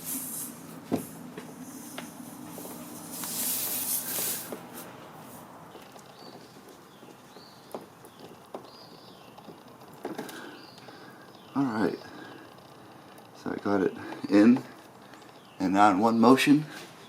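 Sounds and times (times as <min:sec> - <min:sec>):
air hissing out of tire: 0:00.0 - 0:05.0
rubbing of tire plug: 0:01.8 - 0:05.0.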